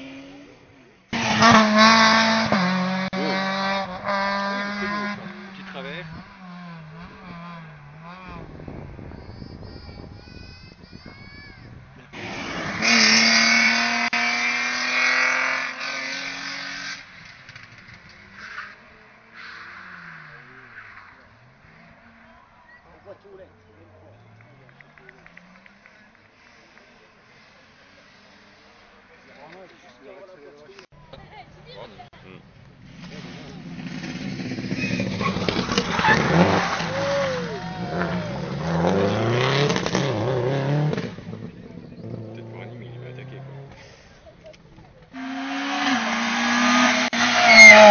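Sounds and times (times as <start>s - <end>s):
rally car passing: 0.0s - 30.0s, 32.4s - 44.4s, 45.0s - 47.9s
short high squeals: 47.0s - 47.9s.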